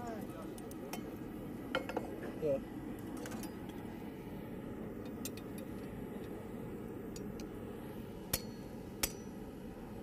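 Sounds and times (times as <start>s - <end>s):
hammer striking metal: 8.3s - 9.4s.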